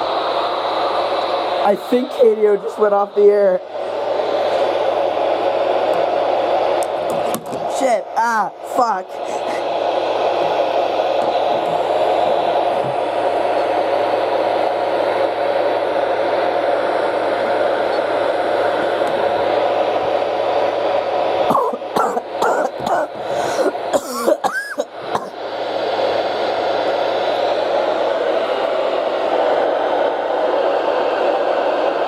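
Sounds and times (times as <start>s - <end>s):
radio static hiss: 0.0s - 20.8s
faint hum: 0.0s - 32.0s.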